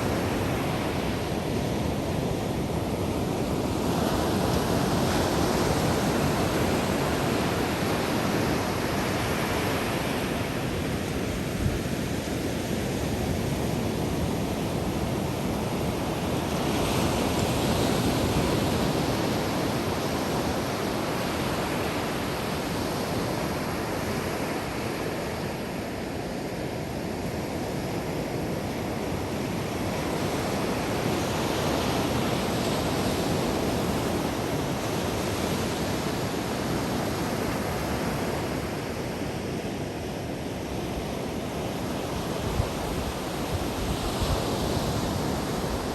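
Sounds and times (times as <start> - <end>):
ocean waves breaking on beach: 0.0 - 45.9
wind on microphone: 40.8 - 45.9.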